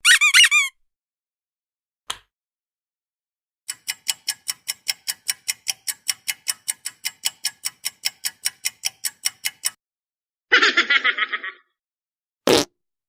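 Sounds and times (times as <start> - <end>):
rapid mechanical ticking: 3.7 - 9.8.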